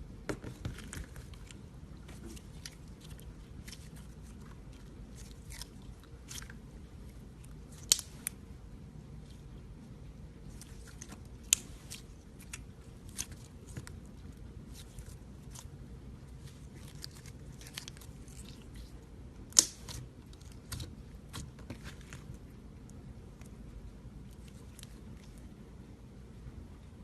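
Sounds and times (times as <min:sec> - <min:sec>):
slime squished by hand: 0:00.8 - 0:08.4, 0:10.5 - 0:22.4.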